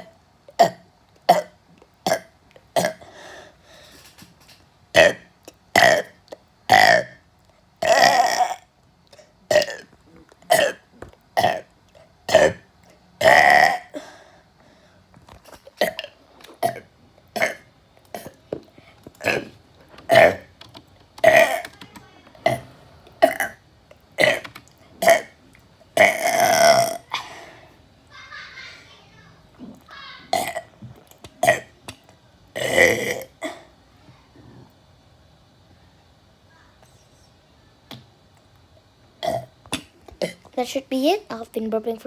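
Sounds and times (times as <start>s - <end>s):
person burping: 0.6s - 3.0s, 5.0s - 7.2s, 7.8s - 11.7s, 12.3s - 14.1s, 15.8s - 18.4s, 19.1s - 20.5s, 21.2s - 21.6s, 22.4s - 23.6s, 24.2s - 25.4s, 26.0s - 27.5s, 29.6s - 30.7s, 31.4s - 31.7s, 32.6s - 33.7s, 39.2s - 39.5s.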